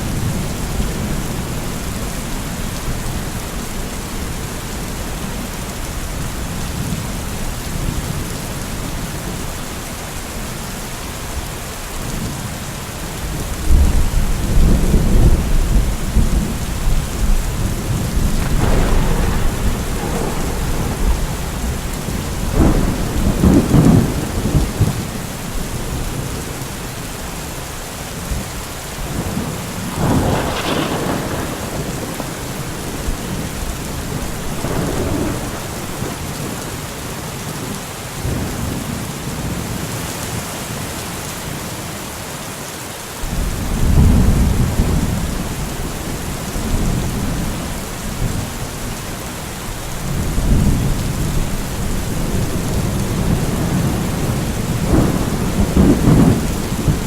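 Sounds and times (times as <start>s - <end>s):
steady rain falling: 0.0s - 57.0s
thunder rumbling: 13.2s - 27.0s, 29.0s - 36.8s, 43.2s - 57.0s.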